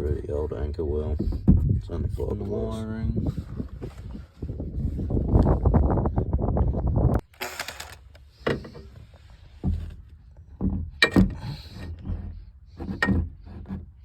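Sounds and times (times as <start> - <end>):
tools knocking and clattering: 9.6 - 13.4.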